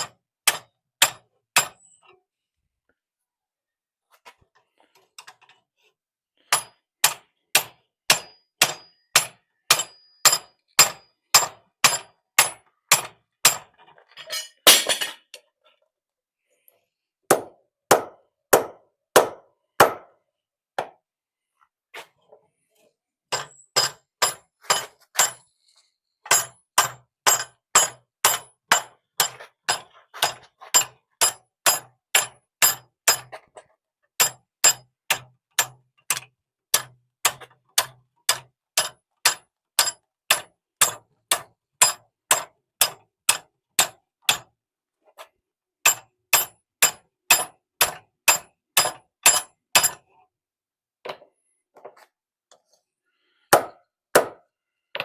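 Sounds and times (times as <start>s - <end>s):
hammer striking steel on anvil: 6.5s - 13.6s, 23.3s - 25.4s, 26.3s - 33.3s, 45.9s - 50.0s, 53.5s - 54.4s.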